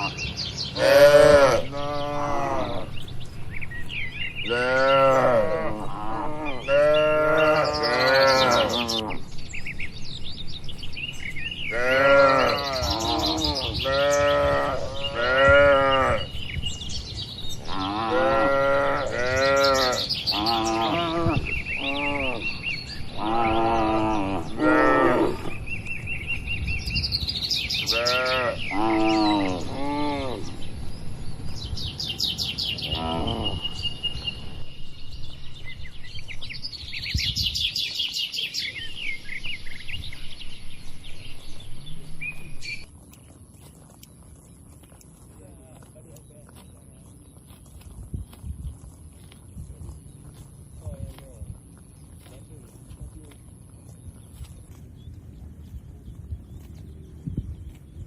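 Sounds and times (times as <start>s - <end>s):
cattle mooing: 0.8s - 2.9s, 4.4s - 9.2s, 11.7s - 16.3s, 17.6s - 25.6s, 27.8s - 30.5s, 32.8s - 33.8s.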